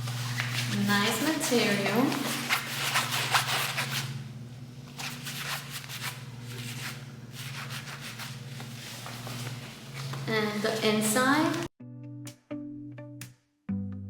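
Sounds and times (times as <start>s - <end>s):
fabric bag rustling: 0.0s - 4.2s, 4.9s - 11.7s.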